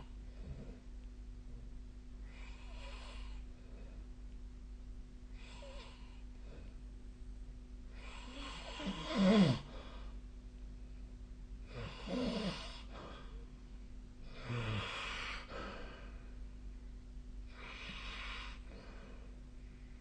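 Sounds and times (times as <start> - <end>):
person snoring: 8.0 - 9.7, 11.7 - 12.9, 14.2 - 15.9.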